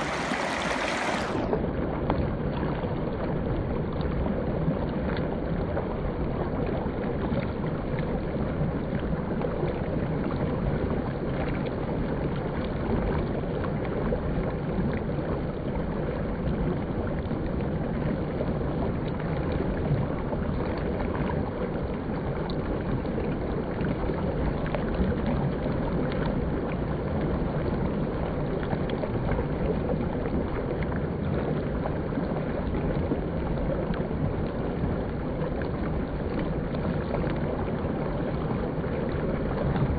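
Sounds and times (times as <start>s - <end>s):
river water rushing: 0.0s - 1.5s
small water splashes: 0.0s - 1.6s.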